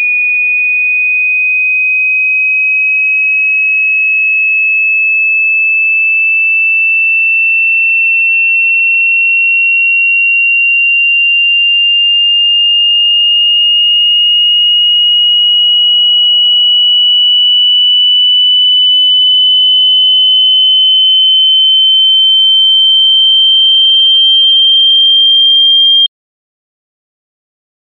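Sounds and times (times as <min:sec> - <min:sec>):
telephone off-hook warning tone: 0:04.0 - 0:26.1.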